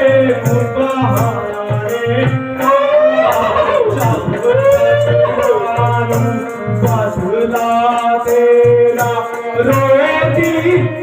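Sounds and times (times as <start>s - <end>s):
drum beating steadily: 0.0s - 11.0s
jingling rhythm: 0.0s - 11.0s
stage band: 0.0s - 11.0s
person singing wavering line: 2.6s - 6.2s.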